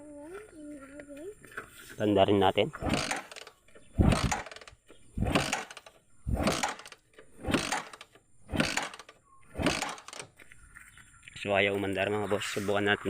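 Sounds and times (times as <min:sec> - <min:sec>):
motorcycle engine cranking: 0:02.8 - 0:10.4.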